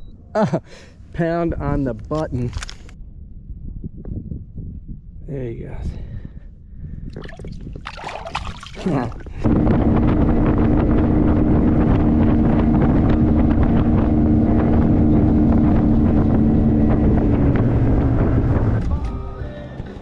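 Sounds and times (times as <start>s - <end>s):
wind buffeting microphone: 1.4s - 18.9s.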